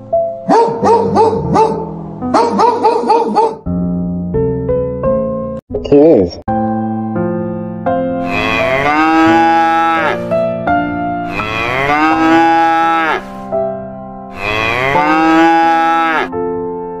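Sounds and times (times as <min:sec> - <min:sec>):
keyboard music: 0:00.0 - 0:05.6, 0:06.5 - 0:17.0
cow mooing: 0:08.2 - 0:10.3, 0:11.2 - 0:13.3, 0:14.3 - 0:16.3.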